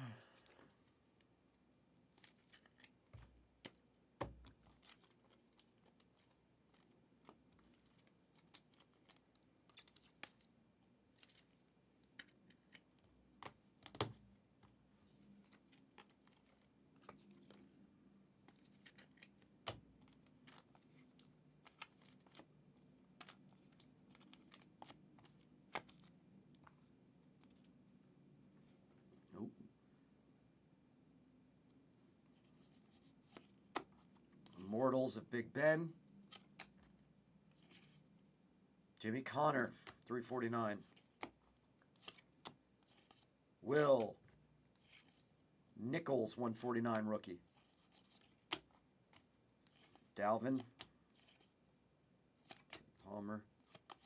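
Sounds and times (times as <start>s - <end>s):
rustling of cards and plastic: 1.9s - 27.8s, 36.2s - 38.0s, 39.5s - 45.4s, 47.2s - 51.6s, 52.4s - 54.0s.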